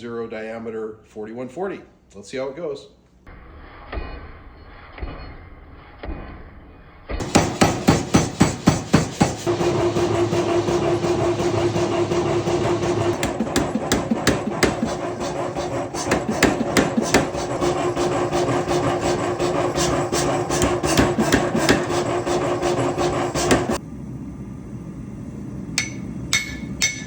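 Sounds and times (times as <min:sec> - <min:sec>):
continuous rasping noise: 0:07.2 - 0:23.8
hammer striking metal: 0:07.2 - 0:23.8, 0:25.8 - 0:27.0
steady hum: 0:07.3 - 0:27.0.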